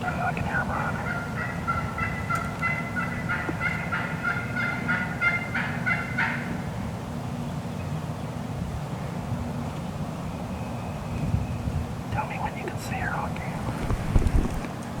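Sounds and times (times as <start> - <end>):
wild turkey calling: 0.0 - 6.7.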